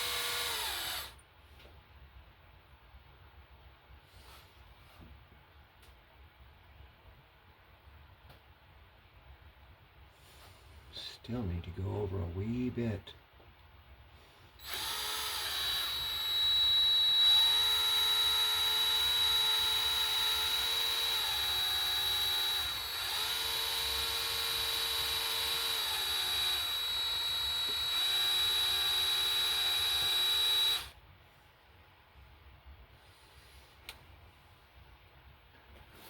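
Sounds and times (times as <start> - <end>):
electric drill boring into metal: 0.0 - 1.2, 14.6 - 31.0.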